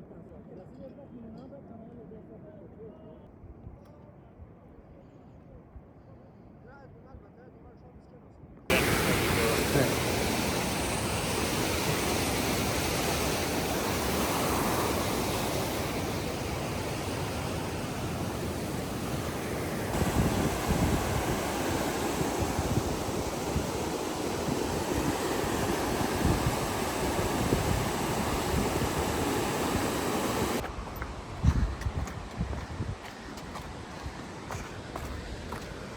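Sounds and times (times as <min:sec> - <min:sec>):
fast river rushing: 0:08.7 - 0:31.4
wind buffeting microphone: 0:08.7 - 0:35.9.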